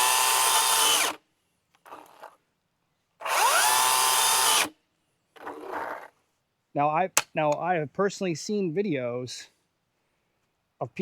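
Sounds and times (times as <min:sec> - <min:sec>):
electric chainsaw motor whining: 0:00.0 - 0:01.2, 0:03.2 - 0:04.7.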